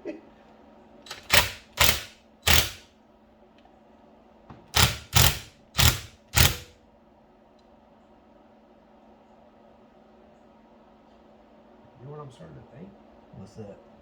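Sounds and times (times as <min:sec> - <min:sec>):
sharp metal taps: 0:01.1 - 0:02.8, 0:04.8 - 0:06.7.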